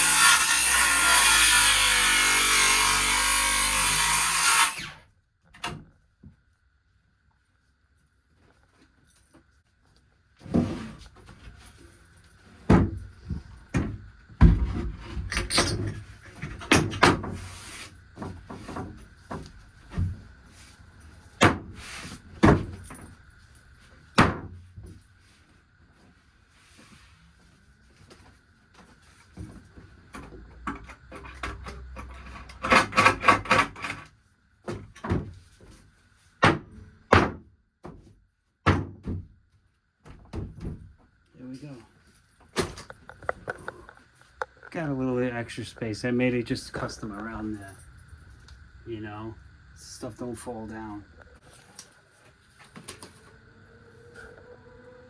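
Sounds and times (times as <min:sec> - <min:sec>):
faint steady whine: 0:40.7 - 0:55.0.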